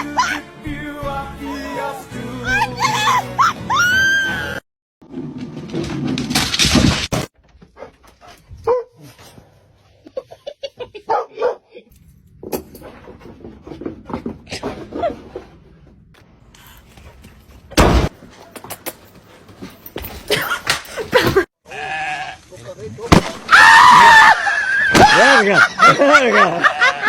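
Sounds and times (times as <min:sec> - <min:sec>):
music: 0:00.0 - 0:04.6
dog barking and whining: 0:08.6 - 0:09.1.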